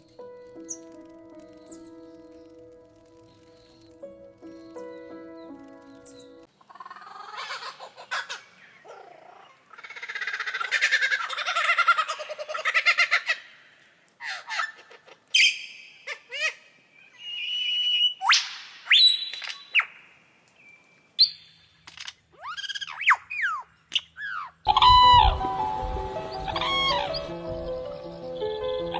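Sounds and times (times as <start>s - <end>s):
music: 0.0s - 6.5s, 24.7s - 28.9s
birds chirping and whistling: 0.6s - 6.5s, 22.4s - 28.9s.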